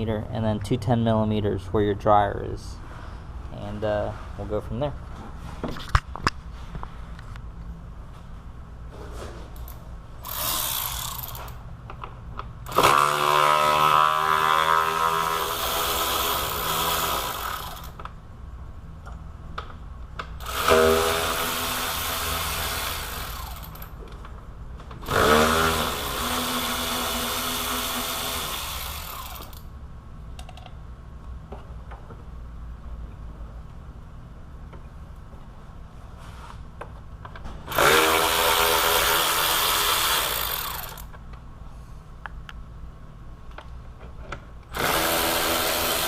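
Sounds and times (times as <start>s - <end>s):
power tool spinning bolts: 10.2s - 11.6s, 12.6s - 18.0s, 20.4s - 24.0s, 25.0s - 29.7s, 37.7s - 41.1s, 44.7s - 46.0s.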